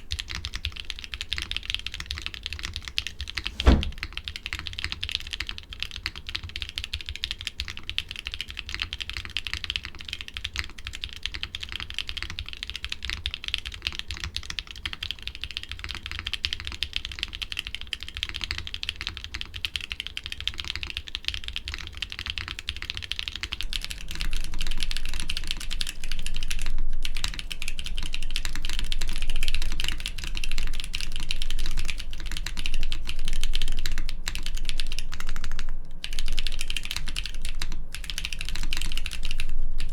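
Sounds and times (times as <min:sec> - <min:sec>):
mechanical keyboard typing: 0:26.5 - 0:39.9.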